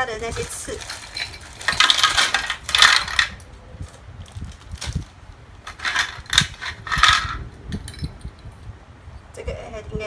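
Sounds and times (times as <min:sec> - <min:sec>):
packaging rustling: 0:00.2 - 0:07.4.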